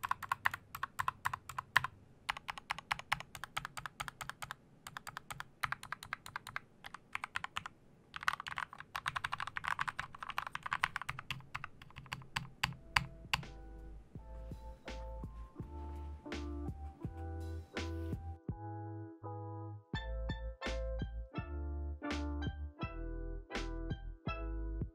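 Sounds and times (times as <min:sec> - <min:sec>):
mechanical keyboard typing: 0:00.0 - 0:13.6
music: 0:12.7 - 0:24.9.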